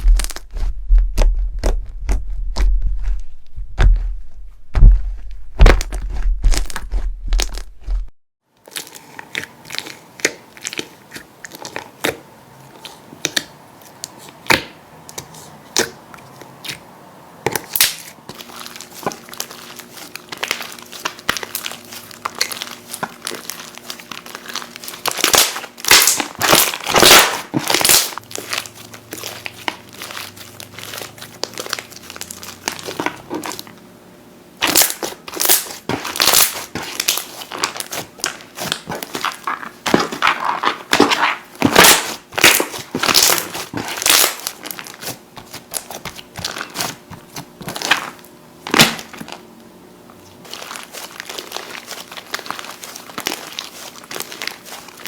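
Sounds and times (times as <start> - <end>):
slime crackling and popping: 0.0 - 2.8, 17.6 - 33.6, 34.6 - 49.4, 50.4 - 55.0.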